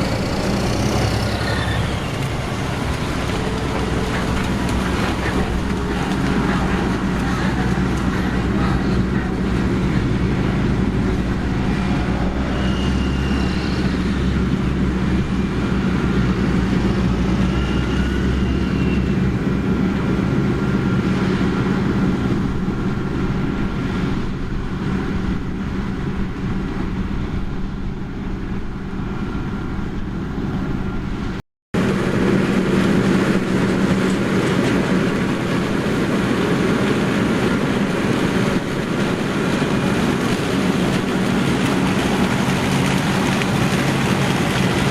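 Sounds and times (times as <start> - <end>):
harvest machinery engine hum: 0.0 - 44.9.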